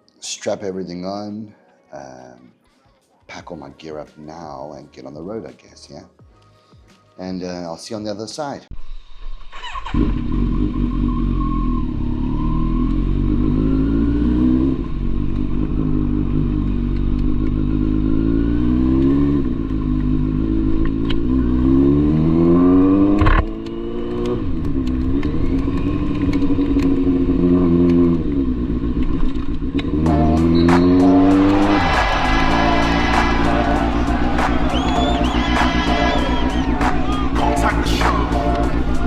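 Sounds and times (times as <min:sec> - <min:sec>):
motorcycle engine shifting gears: 0:09.5 - 0:37.4.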